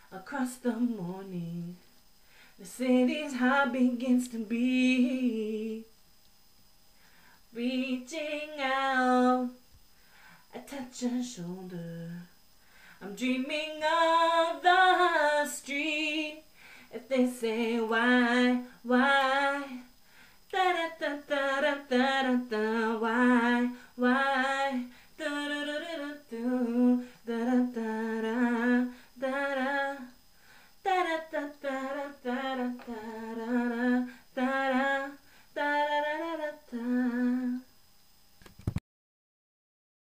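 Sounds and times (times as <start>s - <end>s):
woman singing without words: 0.0s - 6.0s, 7.4s - 37.9s
singer breathing: 2.1s - 2.6s, 6.9s - 7.5s, 9.9s - 10.5s, 12.5s - 13.0s, 16.5s - 16.9s, 20.0s - 20.5s, 30.3s - 30.8s.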